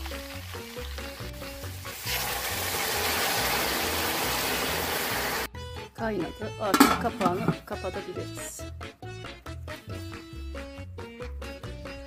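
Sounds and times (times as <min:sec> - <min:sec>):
loud sizzling hiss: 0:00.6 - 0:05.5
background music with steady beat: 0:05.5 - 0:12.0.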